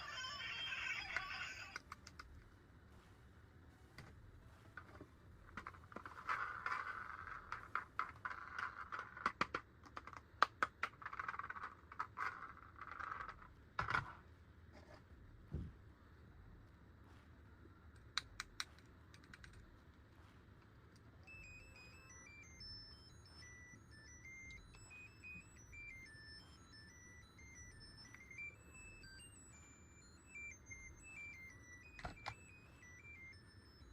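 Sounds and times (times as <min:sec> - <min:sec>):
faint electronic beeping melody: 0:00.0 - 0:01.8, 0:21.1 - 0:33.9.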